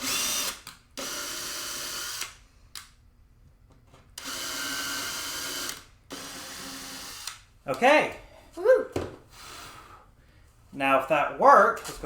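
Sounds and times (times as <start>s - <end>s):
power drill running: 0.0s - 2.3s, 4.2s - 7.4s.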